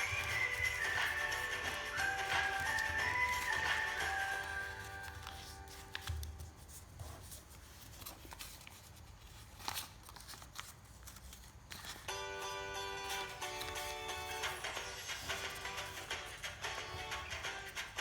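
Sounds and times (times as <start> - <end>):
background music: 0.0 - 6.1, 12.1 - 18.0
paper rustling and folding: 0.0 - 18.0.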